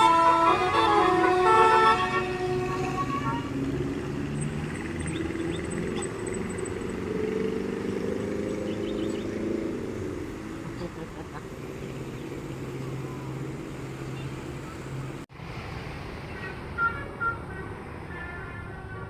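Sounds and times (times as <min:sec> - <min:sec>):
bus musical air horn melody: 0:00.0 - 0:04.1, 0:16.3 - 0:19.0
bus engine running: 0:00.0 - 0:19.0.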